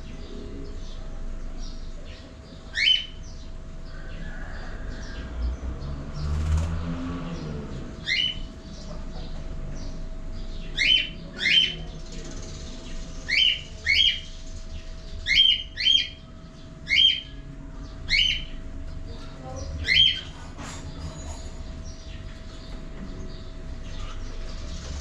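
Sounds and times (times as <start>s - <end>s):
faint hum: 0.0s - 5.2s.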